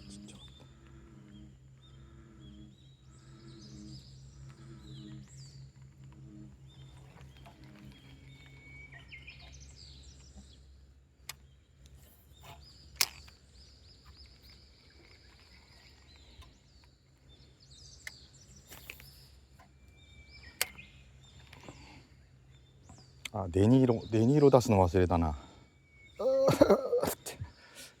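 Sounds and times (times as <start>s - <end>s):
birds chirping and whistling: 0.0s - 27.8s
faint low hum: 0.0s - 27.8s.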